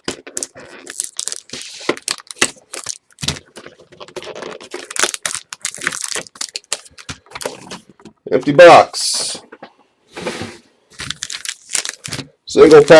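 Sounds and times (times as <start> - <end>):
foil packs crinkling: 0.0 - 7.9, 10.9 - 12.9.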